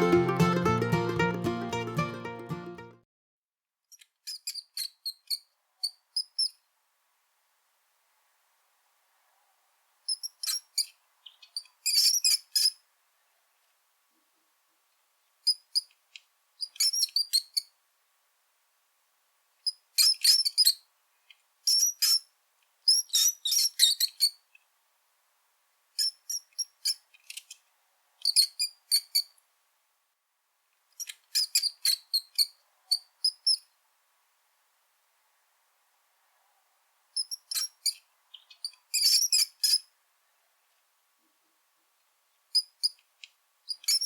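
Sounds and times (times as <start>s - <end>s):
rat squeaking: 31.0s - 33.7s, 37.2s - 39.9s, 42.6s - 43.0s, 43.7s - 44.0s.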